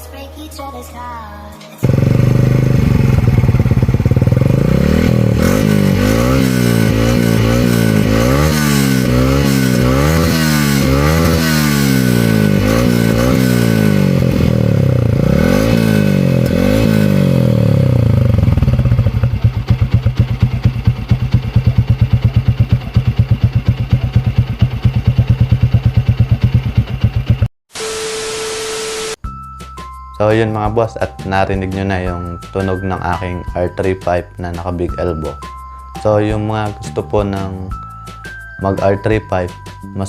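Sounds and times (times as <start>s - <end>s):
motorcycle engine revving and idling: 1.8s - 27.5s.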